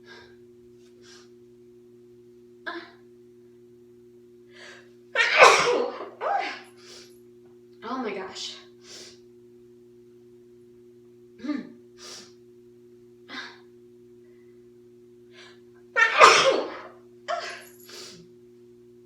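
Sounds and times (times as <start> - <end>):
woman sneezing loudly: 5.2 - 6.6, 16.0 - 17.6.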